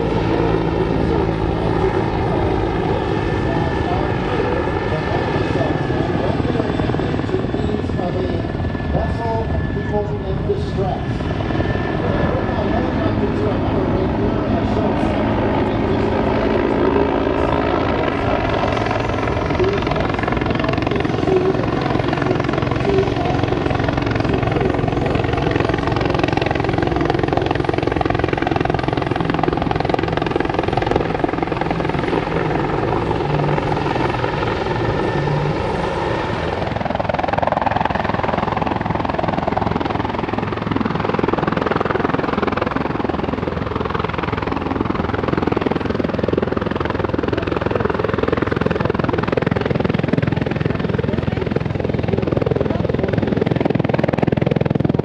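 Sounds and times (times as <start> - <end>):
steady tones: 0.0 - 42.4
helicopter rotor and turbine noise: 0.0 - 55.0.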